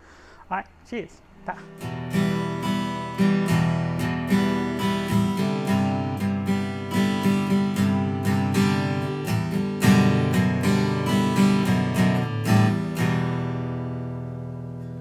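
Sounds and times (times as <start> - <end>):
acoustic guitar strumming: 1.2 - 15.0.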